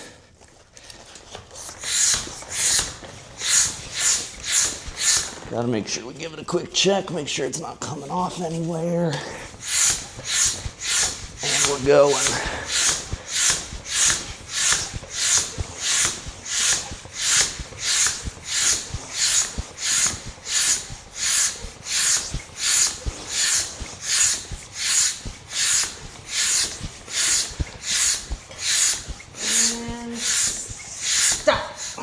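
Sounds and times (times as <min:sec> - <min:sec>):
bicycle pump hissing strokes: 0:00.9 - 0:32.0.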